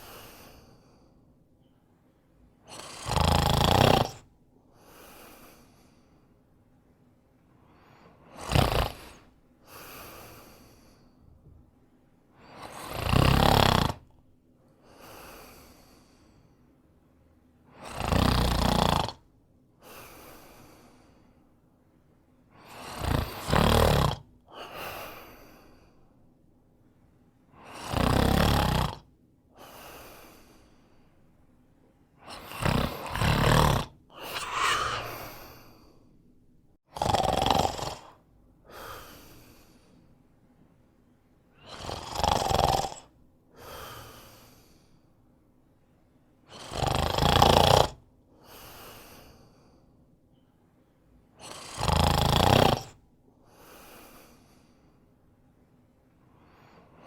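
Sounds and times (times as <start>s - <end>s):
man snoring: 2.7s - 5.7s, 8.2s - 11.0s, 12.5s - 14.1s, 17.7s - 19.3s, 22.6s - 25.6s, 27.6s - 30.5s, 32.2s - 35.9s, 36.9s - 39.6s, 41.6s - 44.5s, 46.5s - 48.6s, 51.4s - 53.0s
man breathing out softly: 34.2s - 36.0s.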